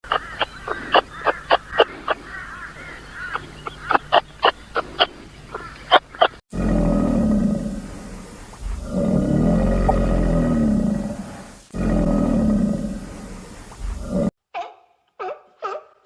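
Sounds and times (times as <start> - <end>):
high sharp animal calls: 0.0 - 6.4
deep animal roar: 6.5 - 14.3.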